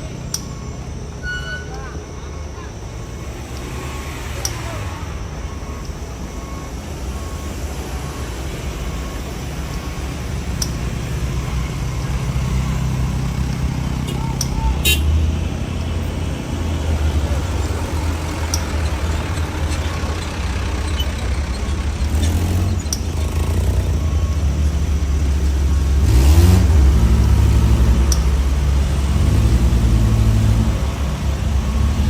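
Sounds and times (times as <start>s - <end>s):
heavy truck engine labouring: 0.0s - 32.0s.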